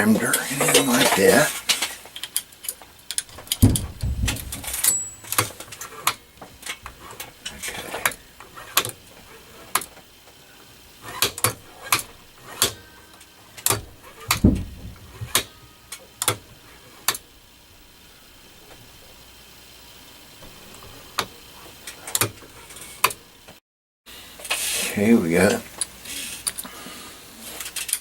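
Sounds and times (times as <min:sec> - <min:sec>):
dull knock: 0:03.6 - 0:04.8, 0:14.4 - 0:15.3
metal clicks and clinks: 0:04.4 - 0:05.8.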